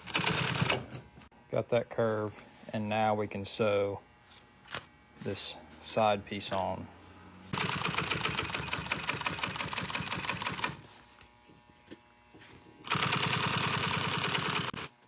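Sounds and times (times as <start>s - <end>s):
sewing machine stitching: 0.0s - 1.0s, 7.5s - 10.8s, 12.8s - 14.9s.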